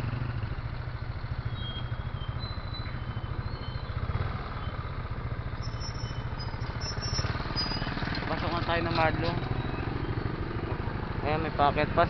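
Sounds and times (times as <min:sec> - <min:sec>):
small motorcycle engine running: 0:00.0 - 0:12.0.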